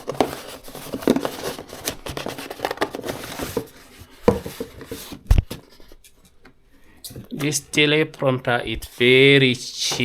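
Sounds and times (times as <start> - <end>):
packaging rustling and crinkling: 0.0 - 6.0.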